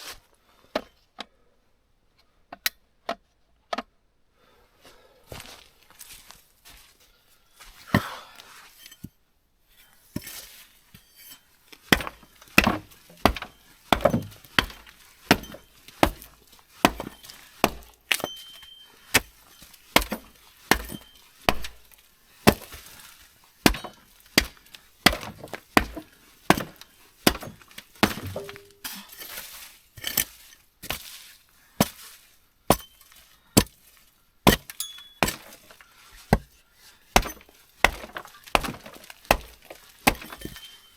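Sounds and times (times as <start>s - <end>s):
footsteps crunching: 5.3s - 8.9s, 10.2s - 40.9s.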